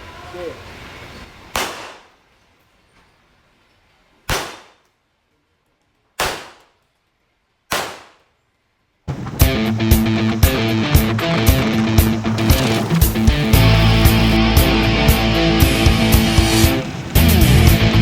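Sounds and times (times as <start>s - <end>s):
guitar music: 9.1s - 18.0s.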